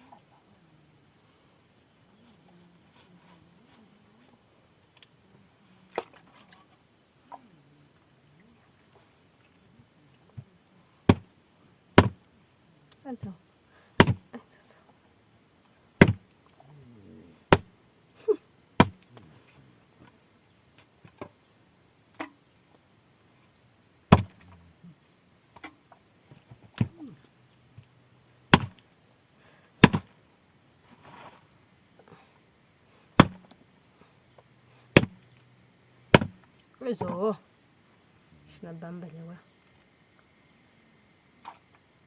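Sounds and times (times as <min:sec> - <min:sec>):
insects droning: 0:00.0 - 0:42.0
sharp chopping strikes: 0:14.0 - 0:14.2, 0:16.0 - 0:16.2, 0:17.5 - 0:17.7, 0:18.8 - 0:19.0, 0:24.1 - 0:24.4, 0:28.5 - 0:28.8, 0:29.8 - 0:30.1, 0:33.2 - 0:33.4, 0:35.0 - 0:35.2, 0:36.2 - 0:36.4.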